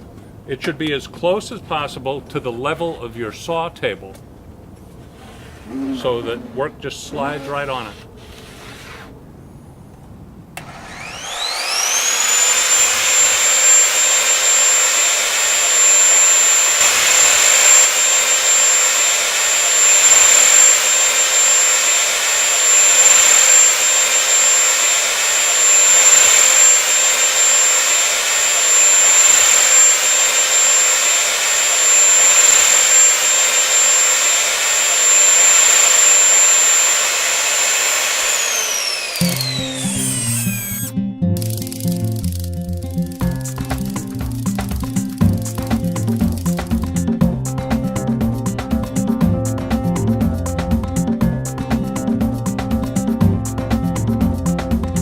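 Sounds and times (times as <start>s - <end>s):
table saw motor whining: 10.6s - 40.9s.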